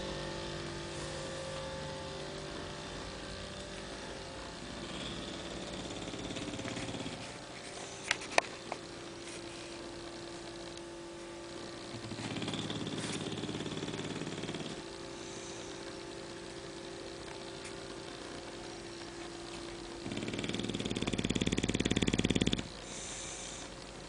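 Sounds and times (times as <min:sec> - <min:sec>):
dog snoring: 0:00.0 - 0:08.7, 0:11.6 - 0:17.8, 0:19.7 - 0:23.9
steady hum: 0:00.0 - 0:24.0.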